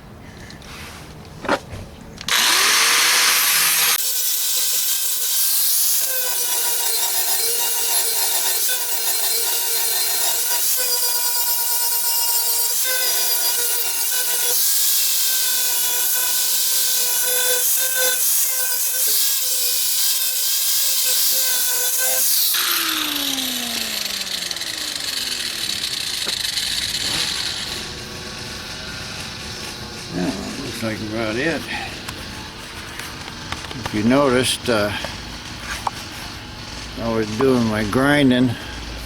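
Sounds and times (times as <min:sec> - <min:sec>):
grinder winding down: 0:02.3 - 0:11.8, 0:20.4 - 0:32.2
angle grinder sanding steel: 0:02.3 - 0:39.0.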